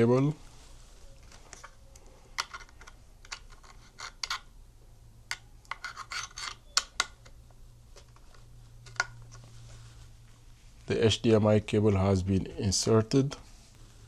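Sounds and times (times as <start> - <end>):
cable handling clicks and rubbing: 1.0 - 4.5, 5.3 - 10.4.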